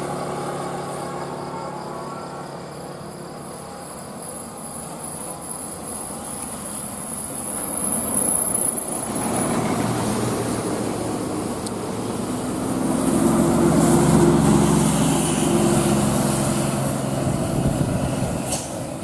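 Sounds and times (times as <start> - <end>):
high-pitched whine: 0.0 - 19.0
vehicle passing: 9.0 - 19.0.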